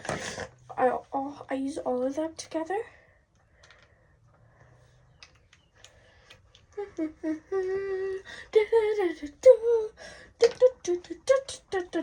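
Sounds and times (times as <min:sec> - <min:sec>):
faint small clicks: 0:03.3 - 0:06.8
girl humming: 0:06.7 - 0:10.0.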